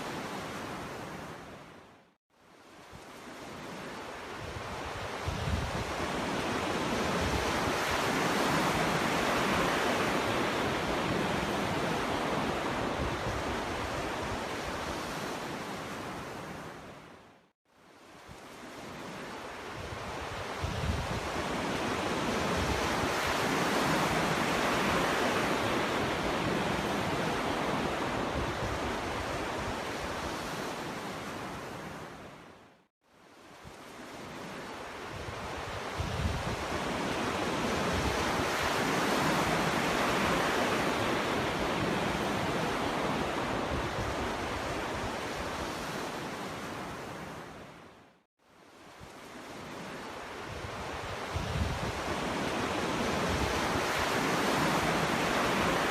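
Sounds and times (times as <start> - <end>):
ocean waves breaking on beach: 0.0 - 55.9.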